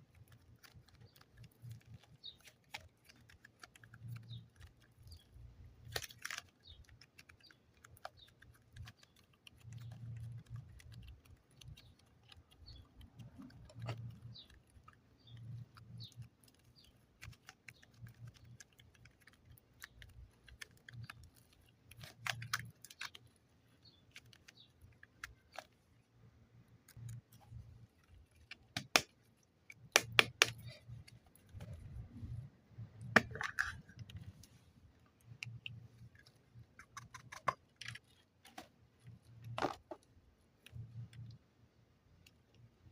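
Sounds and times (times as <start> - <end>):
packaging clicks and snaps: 5.8 - 6.6.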